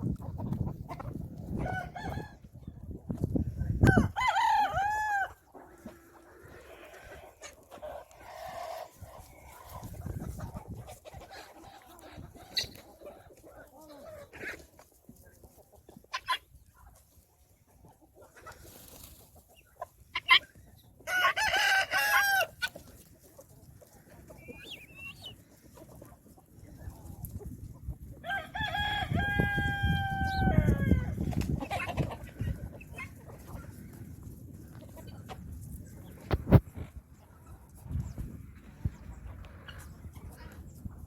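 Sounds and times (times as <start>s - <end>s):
hens clucking: 0.0s - 41.0s
rooster crowing: 3.9s - 5.3s, 21.1s - 22.5s, 28.2s - 31.1s.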